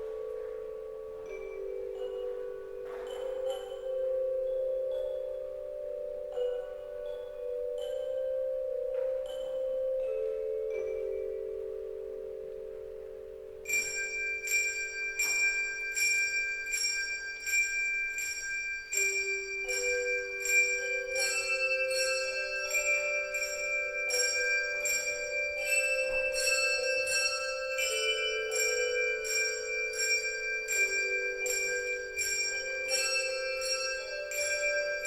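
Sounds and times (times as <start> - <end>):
bright bell strokes: 13.7 - 35.0
sustained chime tones: 13.7 - 35.0.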